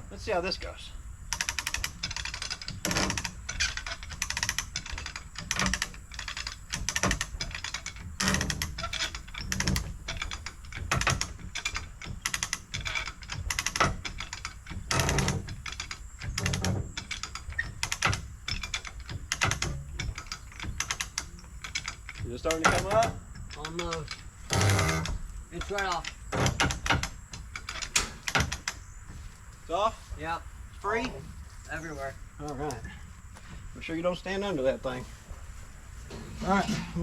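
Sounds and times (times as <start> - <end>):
ratchet pawl clicking: 1.3 - 28.8.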